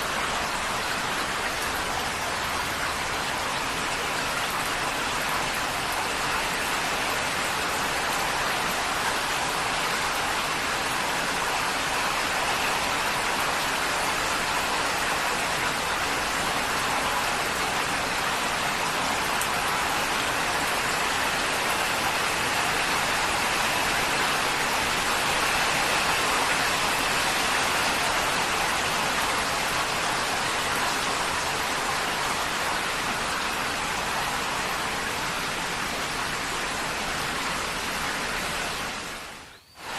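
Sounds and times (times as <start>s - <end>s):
heavy rain on a tin roof: 0.0s - 39.9s.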